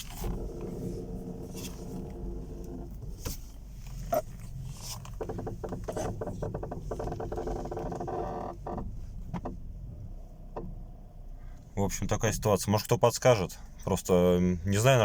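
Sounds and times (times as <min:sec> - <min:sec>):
suspension click: 0:00.0 - 0:10.9
suspension creaking squeak: 0:04.0 - 0:08.9.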